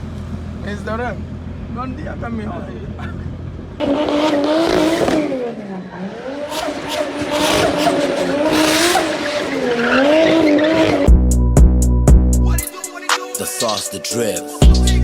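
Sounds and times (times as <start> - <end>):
car engine revving high: 3.7 - 11.3
tyre squeal: 6.5 - 11.1.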